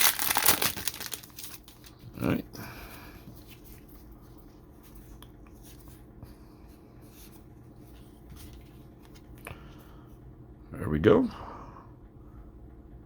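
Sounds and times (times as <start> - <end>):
cards and wrapper rustling: 0.0 - 2.1.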